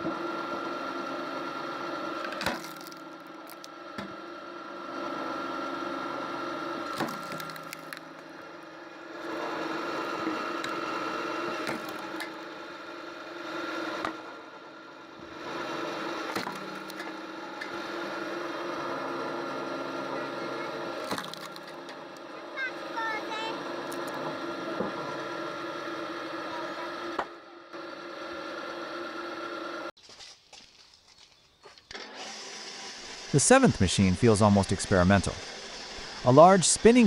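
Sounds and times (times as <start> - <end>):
log splitter humming: 0.0 - 29.9, 30.6 - 37.0
logs cracking: 2.3 - 3.7, 6.9 - 8.3, 21.0 - 22.2.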